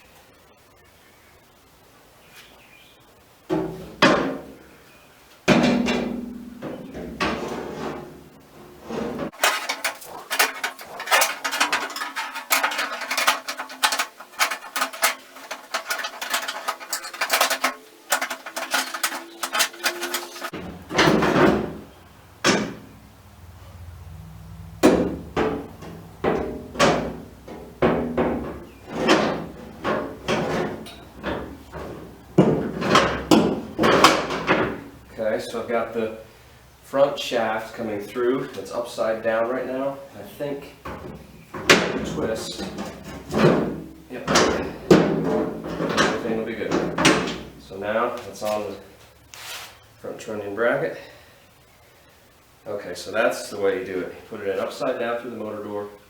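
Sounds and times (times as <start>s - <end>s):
metal yoke clanking and knocking: 3.5s - 4.6s, 5.5s - 23.0s, 24.8s - 35.3s, 40.8s - 48.7s.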